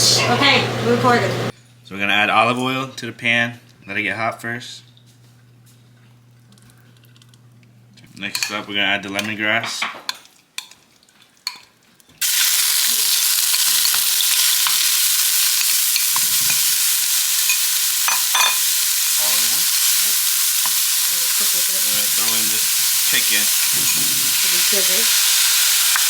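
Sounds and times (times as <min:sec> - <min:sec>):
paste frying in hot oil: 0:08.2 - 0:26.0.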